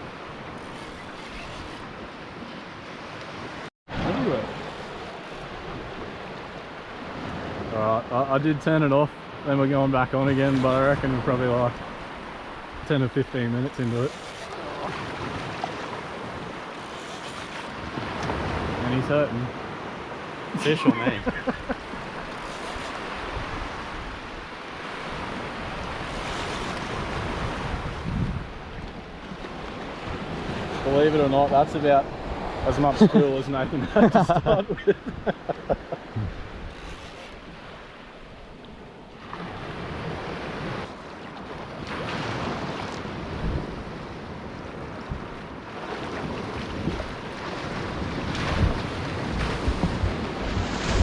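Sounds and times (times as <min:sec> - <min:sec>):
surf washing ashore: 0:00.0 - 0:51.0
wind buffeting microphone: 0:21.1 - 0:30.9, 0:42.3 - 0:51.0.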